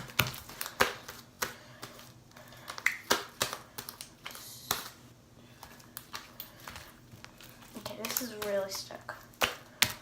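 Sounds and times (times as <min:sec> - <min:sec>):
slime squished by hand: 0:00.0 - 0:05.0.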